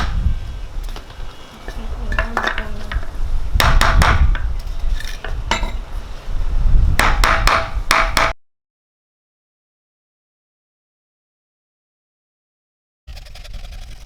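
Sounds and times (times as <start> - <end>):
hard knocks and taps: 7.0 - 8.3.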